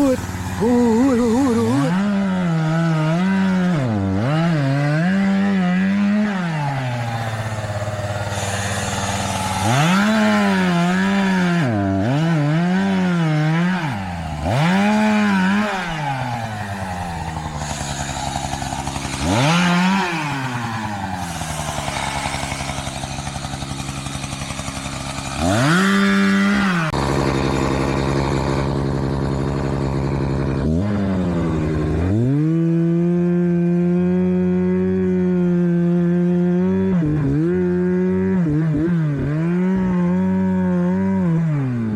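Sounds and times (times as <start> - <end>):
chainsaw engine revving: 0.0 - 41.9.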